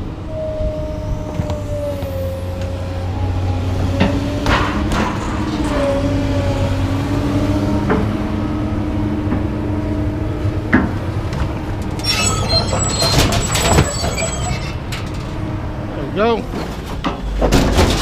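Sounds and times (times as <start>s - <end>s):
engine running: 0.0s - 12.1s.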